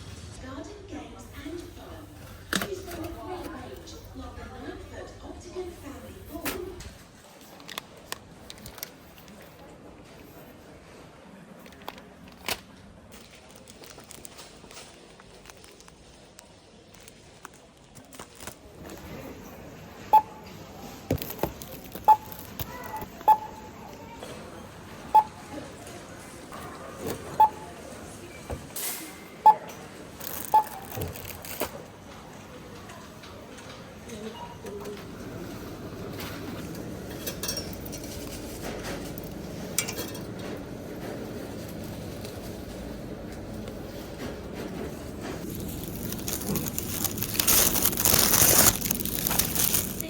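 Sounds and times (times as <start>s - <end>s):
short electronic beeps: 20.1s - 20.5s, 22.1s - 22.4s, 23.2s - 23.7s, 25.1s - 25.4s, 27.4s - 27.6s
kitchenware clinking: 36.9s - 40.7s.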